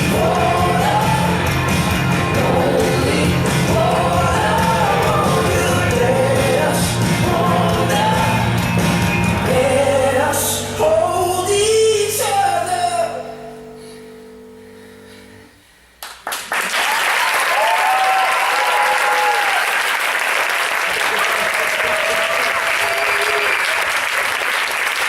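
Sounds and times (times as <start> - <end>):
pop song with singing: 0.0 - 13.6
audience applause: 16.1 - 25.0
audience cheering: 16.5 - 25.0.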